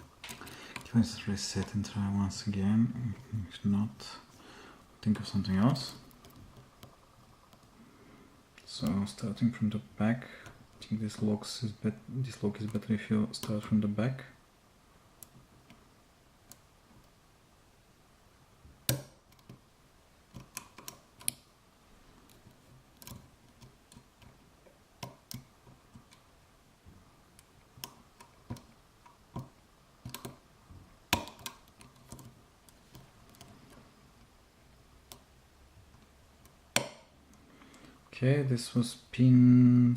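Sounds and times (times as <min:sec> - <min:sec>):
lock pick clicking pins: 0:20.3 - 0:21.5, 0:22.3 - 0:24.4, 0:27.4 - 0:30.4, 0:31.1 - 0:33.8.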